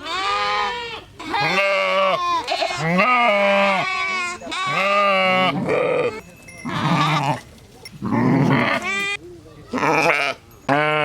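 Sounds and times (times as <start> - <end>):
sheep bleating: 0.0 - 7.4, 8.0 - 9.2.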